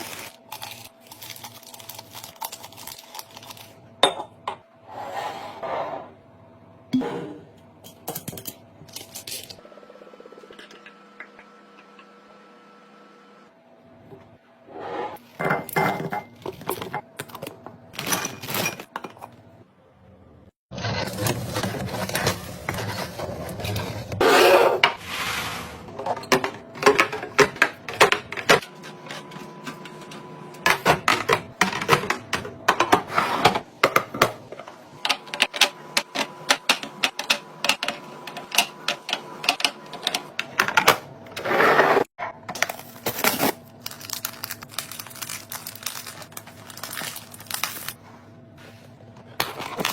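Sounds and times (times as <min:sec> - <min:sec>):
packaging rustling: 0:00.0 - 0:03.8, 0:42.6 - 0:48.0.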